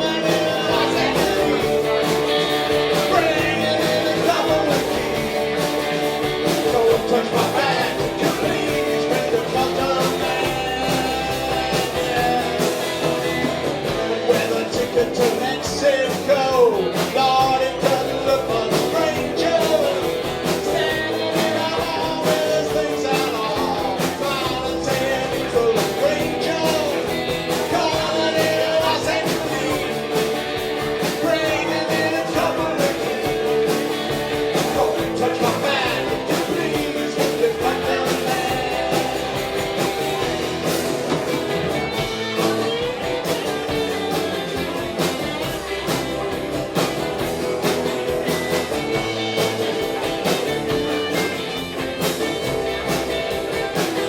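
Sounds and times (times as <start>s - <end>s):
person singing lead vocal: 0.0s - 5.7s, 6.4s - 40.9s
rock band playing: 0.0s - 54.0s.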